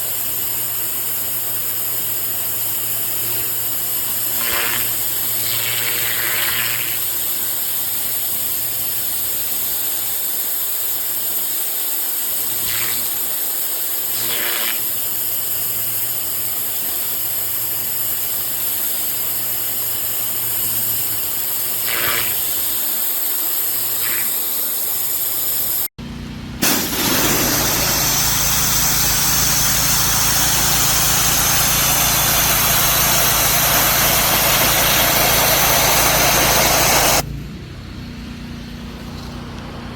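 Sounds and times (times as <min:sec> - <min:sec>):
pressure washer spray hiss: 0:00.0 - 0:25.9, 0:26.6 - 0:37.2
engine low hum: 0:26.0 - 0:39.9.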